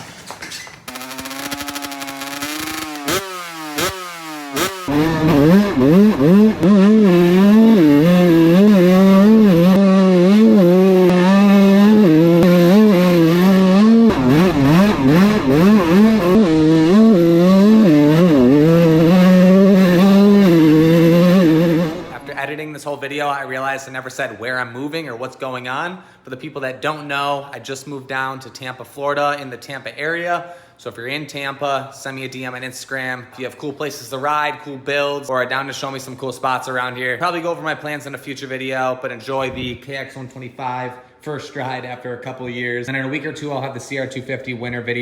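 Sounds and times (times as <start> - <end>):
dirt bike engine revving: 0.9 - 22.4.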